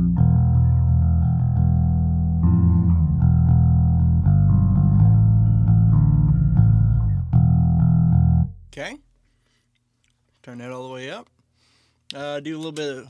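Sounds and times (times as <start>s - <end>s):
electric bass notes and chords: 0.0s - 8.8s.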